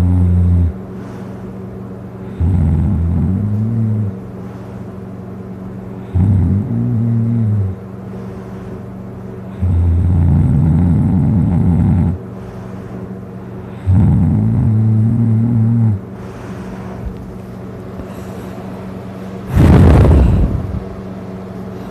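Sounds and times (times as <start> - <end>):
man snoring heavily: 0.0 - 1.4, 2.2 - 4.8, 6.0 - 8.7, 9.5 - 12.9, 13.6 - 17.0, 19.5 - 20.8
steady low hum: 0.0 - 21.9.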